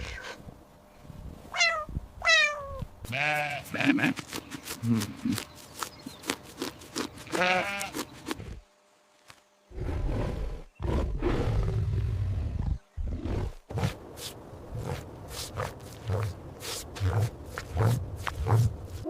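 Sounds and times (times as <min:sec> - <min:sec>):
wavering animal bleat: 0:01.6 - 0:05.4, 0:07.2 - 0:08.0
low rough animal growl: 0:09.7 - 0:14.0.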